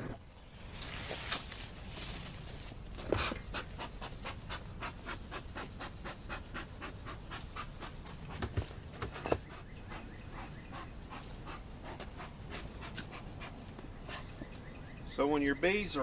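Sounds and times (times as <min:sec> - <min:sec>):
fast panting: 0:03.3 - 0:08.3, 0:09.5 - 0:14.4.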